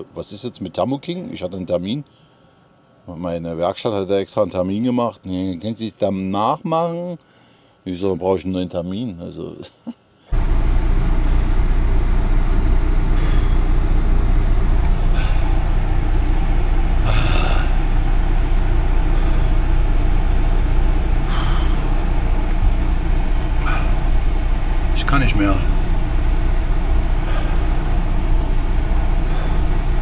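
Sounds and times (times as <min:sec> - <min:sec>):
diesel truck engine rumbling: 0:10.3 - 0:30.0.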